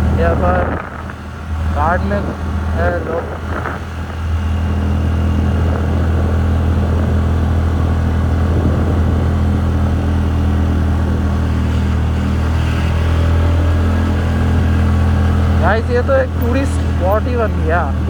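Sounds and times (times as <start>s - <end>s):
scooter engine running: 0.0s - 18.0s.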